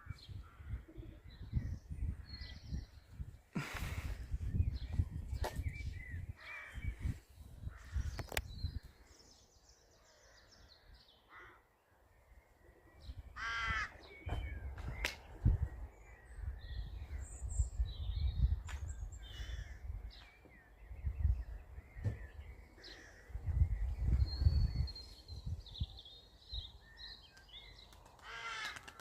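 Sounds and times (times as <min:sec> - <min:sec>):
wind rumbling on microphone: 0:00.0 - 0:09.7, 0:12.9 - 0:27.6
bird cawing: 0:11.2 - 0:11.7, 0:13.4 - 0:14.1, 0:22.8 - 0:23.4, 0:28.2 - 0:29.0.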